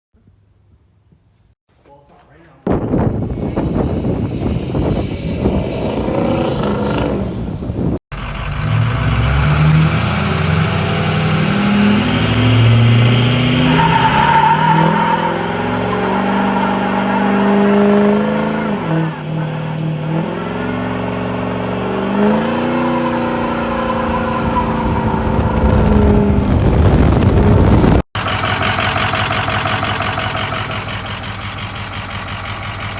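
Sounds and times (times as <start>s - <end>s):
truck engine revving and idling: 2.8s - 32.9s.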